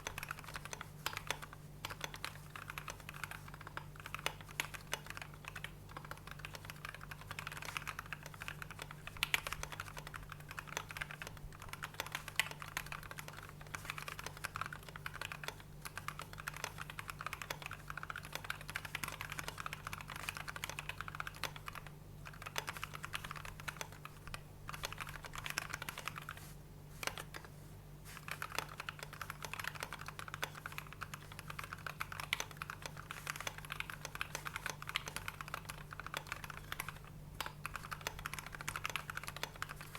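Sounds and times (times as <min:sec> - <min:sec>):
typing on mechanical keyboard: 0:00.0 - 0:26.4, 0:28.1 - 0:39.9.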